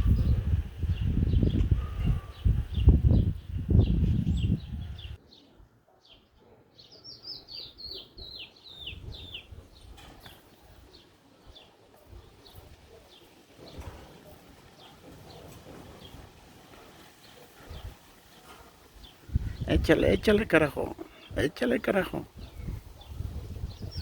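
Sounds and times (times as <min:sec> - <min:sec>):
bird chirping: 0:00.0 - 0:16.3.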